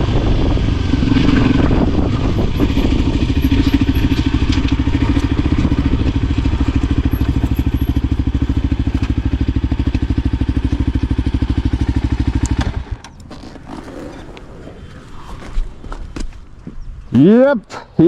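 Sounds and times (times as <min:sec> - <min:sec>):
motorcycle engine idling: 0:01.7 - 0:13.2.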